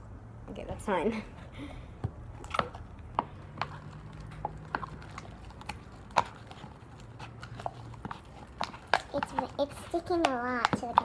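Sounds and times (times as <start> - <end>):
slime squelching in a cup: 2.2 - 11.0.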